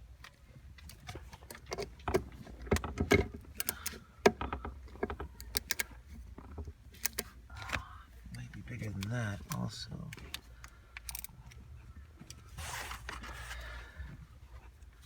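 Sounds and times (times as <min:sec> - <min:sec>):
small hand tools clicking and rattling: 0:00.2 - 0:11.6.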